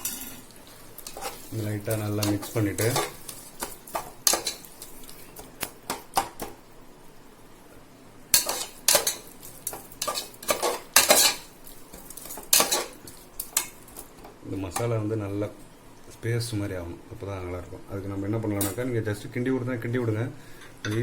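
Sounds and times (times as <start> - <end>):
spoon scraping and clinking pan: 0.0 - 4.7, 8.4 - 11.5, 12.2 - 13.0.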